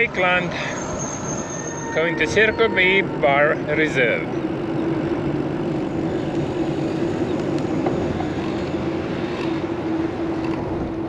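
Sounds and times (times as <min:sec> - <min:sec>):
road rumble: 0:00.0 - 0:11.0
wind: 0:00.0 - 0:11.0.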